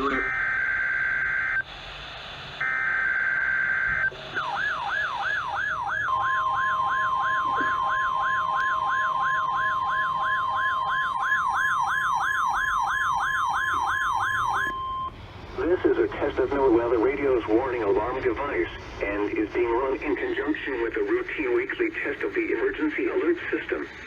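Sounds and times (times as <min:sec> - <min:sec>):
warbling alarm: 0:00.0 - 0:01.7, 0:02.6 - 0:18.7
steady warning tone: 0:00.0 - 0:24.0.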